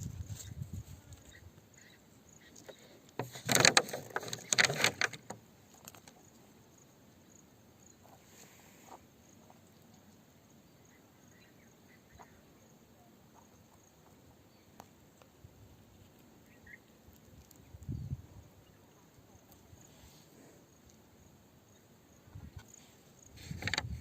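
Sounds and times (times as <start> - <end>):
small clicks: 2.5 - 6.3, 23.4 - 24.0
clattering and scraping: 3.2 - 5.4.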